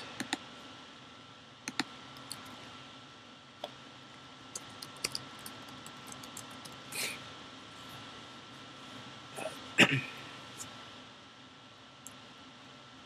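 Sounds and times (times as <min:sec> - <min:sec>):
mouse clicks: 0:01.6 - 0:02.5
computer keyboard typing: 0:04.5 - 0:06.8.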